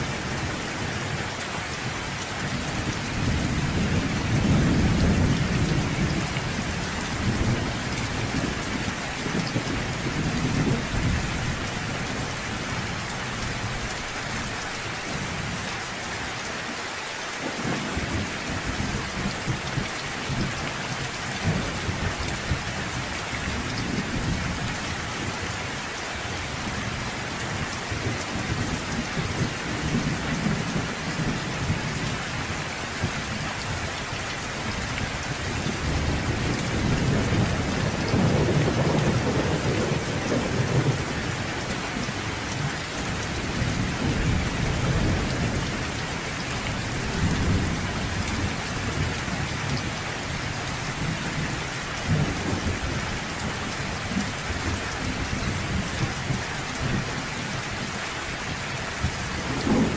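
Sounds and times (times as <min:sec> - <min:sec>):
steady rain: 0:00.0 - 0:59.9
rolling thunder: 0:35.8 - 0:41.3.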